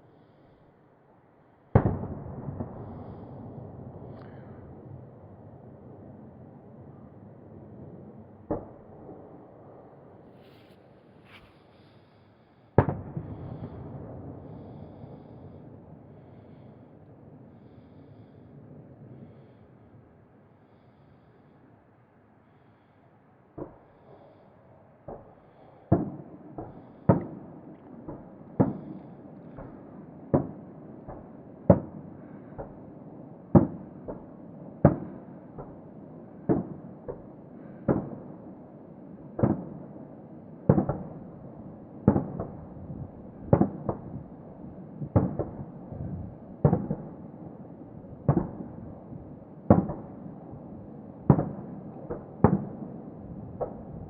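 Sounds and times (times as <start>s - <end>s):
distant fireworks bursting: 25.1s - 38.4s, 40.6s - 54.0s.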